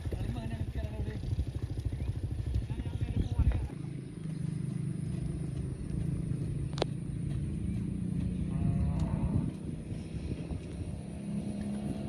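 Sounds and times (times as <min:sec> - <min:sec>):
cow mooing: 0:08.5 - 0:09.6.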